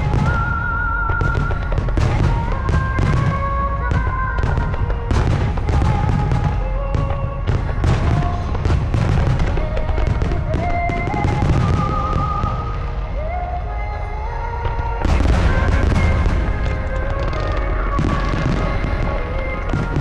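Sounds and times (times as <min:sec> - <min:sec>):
fireworks bursting and crackling: 0:00.0 - 0:20.0
slow melody over loudspeakers: 0:00.0 - 0:20.0
low rumble: 0:12.0 - 0:20.0.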